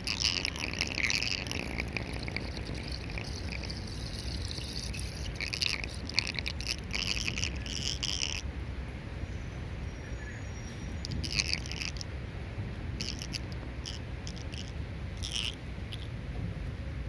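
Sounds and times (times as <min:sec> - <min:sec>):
high pulsing chirps: 0:00.0 - 0:08.4, 0:09.3 - 0:12.0, 0:13.0 - 0:16.1
water draining and gurgling: 0:00.0 - 0:08.4.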